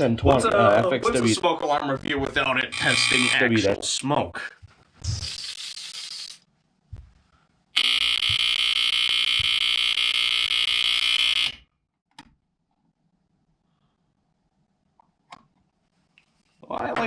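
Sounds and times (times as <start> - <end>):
smoke alarm buzzing: 2.5 - 3.6, 7.8 - 11.7.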